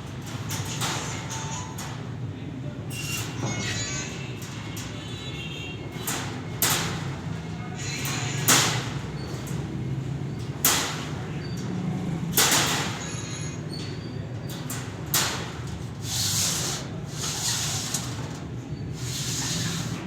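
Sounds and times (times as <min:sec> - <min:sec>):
sharp rattling strokes: 0:15.2 - 0:18.4.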